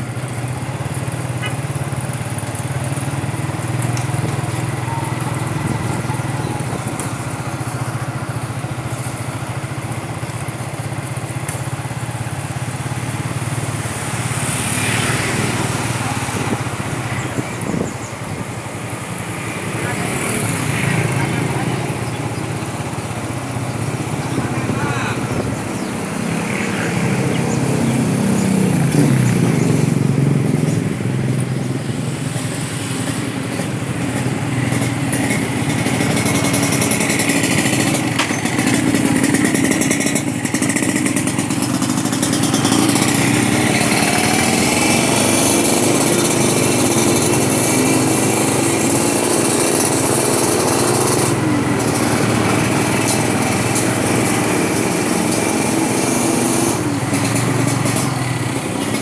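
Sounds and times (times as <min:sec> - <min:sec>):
motorcycle engine running: 0:00.0 - 0:59.0
road traffic: 0:00.0 - 0:59.0.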